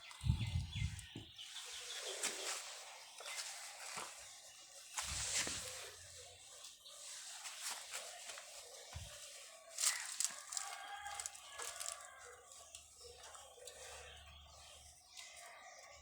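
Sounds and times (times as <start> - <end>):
rustling: 0.9 - 14.1
rooster crowing: 9.9 - 12.5.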